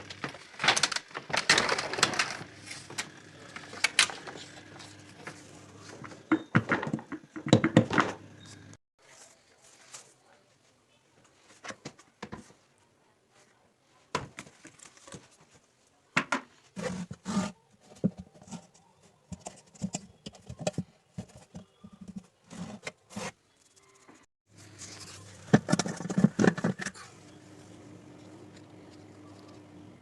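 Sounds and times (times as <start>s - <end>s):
hard parts clicking and knocking: 6.0s - 8.2s.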